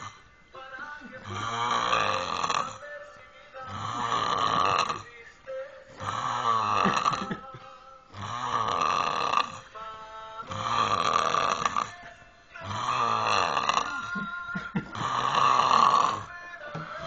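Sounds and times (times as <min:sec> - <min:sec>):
man snoring heavily: 0:00.0 - 0:00.2, 0:01.1 - 0:03.0, 0:03.6 - 0:05.2, 0:06.0 - 0:09.8, 0:10.4 - 0:17.0.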